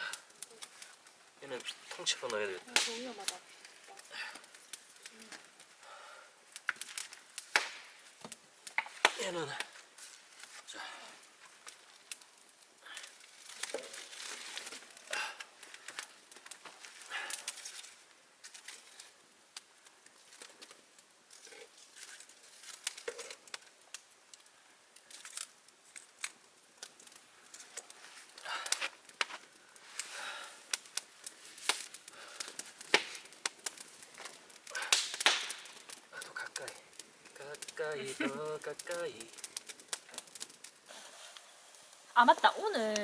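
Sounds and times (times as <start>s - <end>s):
campfire crackling: 0.0s - 43.0s
rushing hissing noise: 40.9s - 42.6s.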